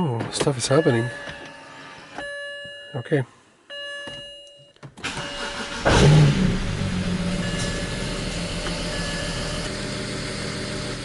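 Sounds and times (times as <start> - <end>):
car engine starting and idling: 5.0 - 11.0.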